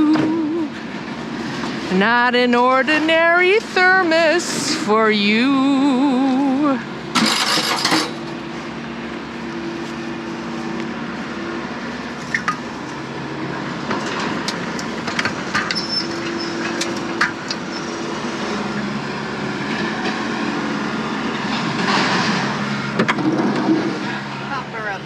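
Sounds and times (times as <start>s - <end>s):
engine running: 0.0s - 25.0s
metallic clanks and rattles: 7.1s - 8.4s.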